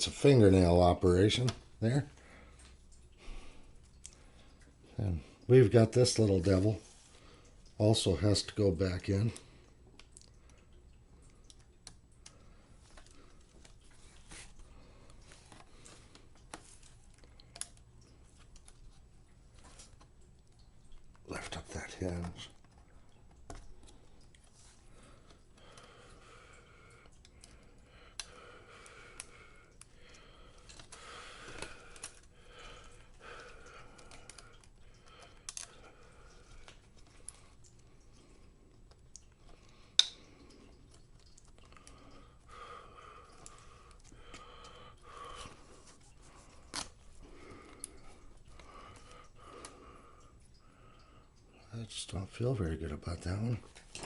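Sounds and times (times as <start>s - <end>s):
small clicks and taps: 9.0s - 21.4s, 22.0s - 25.9s, 34.0s - 38.2s, 38.8s - 42.1s.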